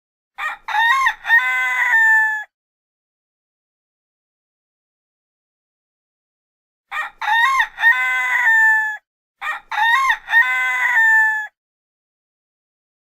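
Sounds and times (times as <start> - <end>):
rooster crowing: 0.4 - 2.5, 6.9 - 11.6.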